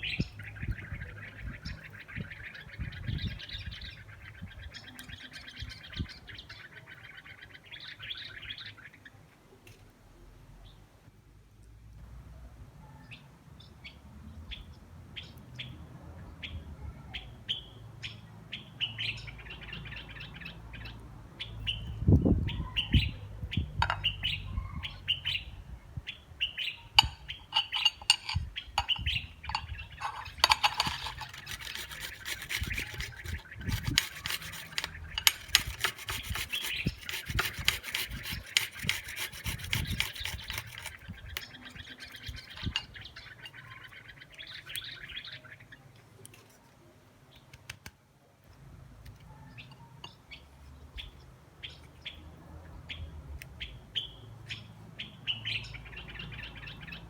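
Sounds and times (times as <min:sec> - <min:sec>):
small bird chirping: 0:00.0 - 0:09.2, 0:16.4 - 0:46.6
knocks and rubbing: 0:27.0 - 0:41.0
rapid crackling rasp: 0:27.0 - 0:42.9.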